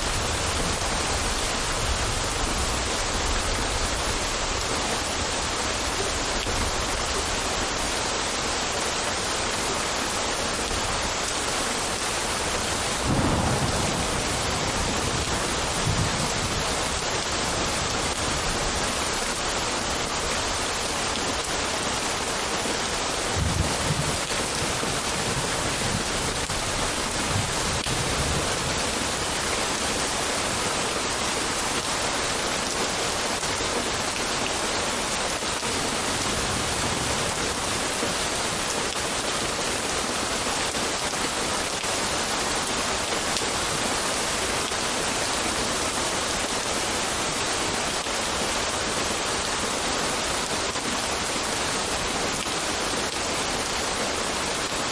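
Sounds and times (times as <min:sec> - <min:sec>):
steady rain: 0:00.0 - 0:54.9
low rumbles of thunder: 0:13.0 - 0:18.7, 0:23.3 - 0:28.9.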